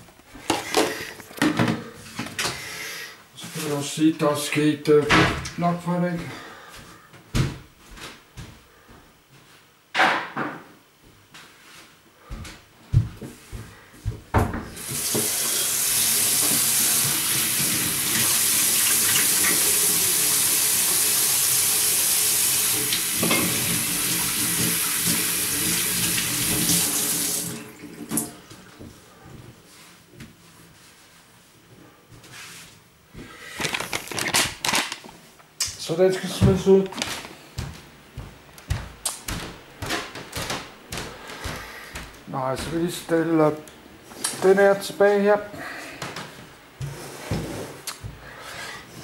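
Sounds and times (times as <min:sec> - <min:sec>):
water tap running into sink: 0:14.8 - 0:28.4.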